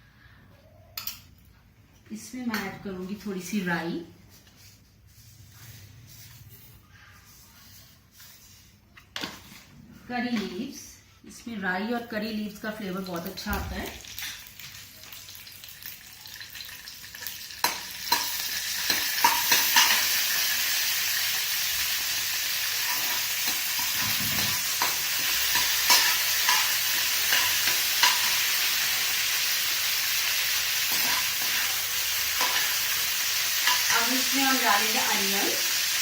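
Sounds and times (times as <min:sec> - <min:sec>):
seeds sizzling in hot oil: 0:14.0 - 0:36.0.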